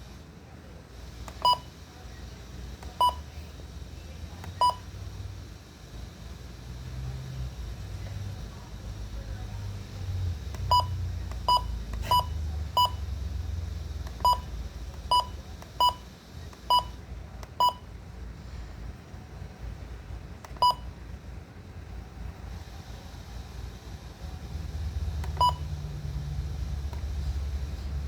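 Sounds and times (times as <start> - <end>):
weather radio electronic beeps: 1.3 - 1.7, 2.9 - 3.3, 10.7 - 13.2, 14.1 - 17.0, 17.6 - 17.9.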